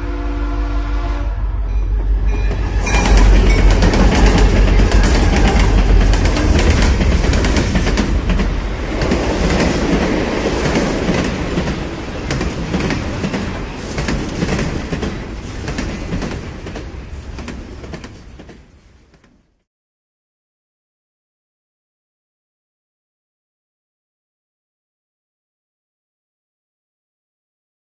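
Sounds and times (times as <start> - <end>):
train running on rails: 0.0 - 19.6
wheels clicking over track: 2.5 - 19.3.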